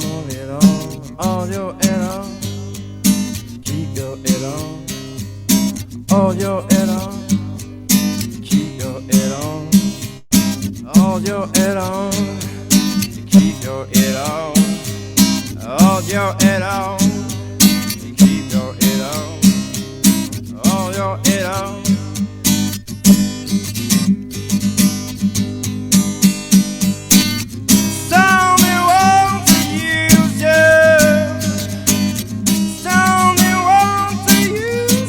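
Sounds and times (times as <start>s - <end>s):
acoustic guitar strumming: 0.0s - 35.0s.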